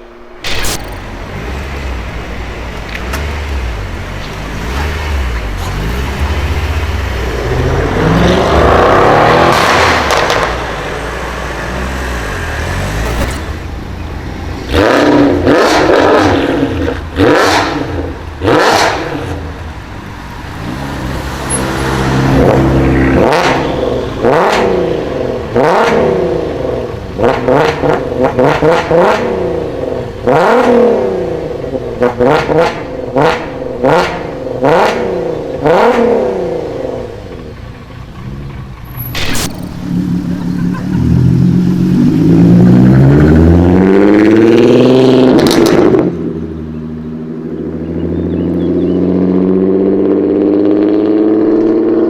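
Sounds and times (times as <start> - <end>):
car engine revving hard: 3.0 - 19.4, 20.5 - 37.2, 39.2 - 46.4.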